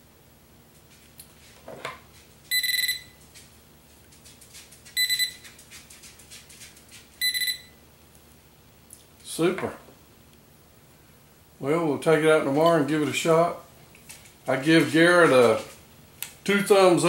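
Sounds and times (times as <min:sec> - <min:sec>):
metal detector buzzing beeps: 0:02.5 - 0:03.2, 0:05.0 - 0:05.4, 0:07.2 - 0:07.8.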